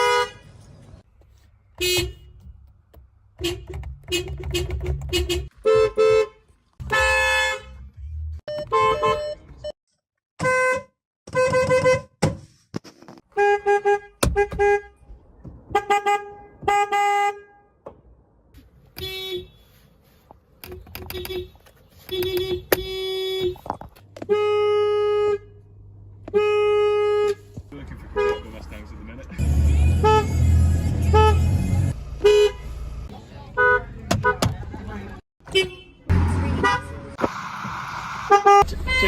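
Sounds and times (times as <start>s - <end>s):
car horns honking: 0.0s - 0.6s, 1.8s - 2.6s, 3.4s - 9.7s, 10.4s - 12.2s, 13.3s - 15.1s, 15.7s - 17.8s, 18.9s - 19.8s, 20.6s - 32.8s, 33.5s - 34.6s, 35.4s - 37.2s, 38.3s - 39.0s.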